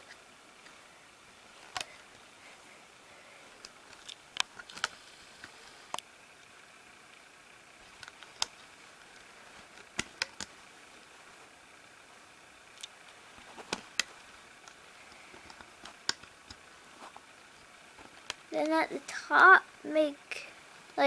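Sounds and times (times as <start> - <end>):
faint background hiss: 0.0 - 21.0
rubber bands snapping onto pegs: 9.8 - 10.5.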